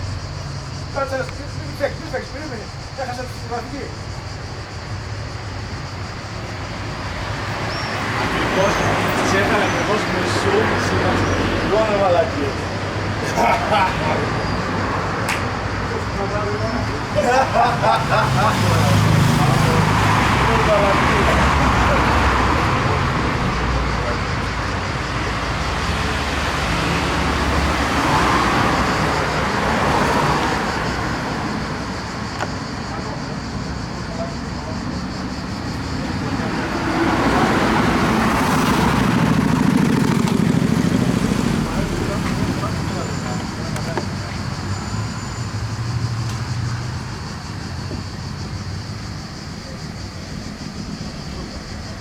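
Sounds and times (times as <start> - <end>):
vehicle engine running with hiss: 15.2 - 52.0.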